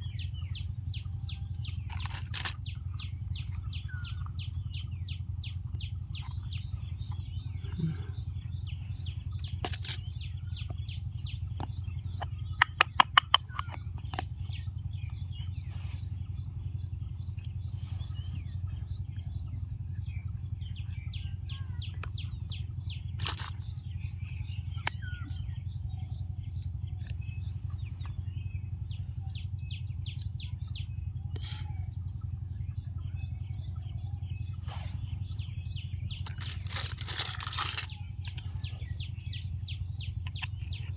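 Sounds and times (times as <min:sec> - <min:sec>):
birds chirping: 0:00.0 - 0:40.9
plastic toy pieces clicking: 0:01.8 - 0:02.6, 0:09.5 - 0:10.0, 0:12.6 - 0:14.3, 0:23.2 - 0:23.6, 0:36.2 - 0:37.9.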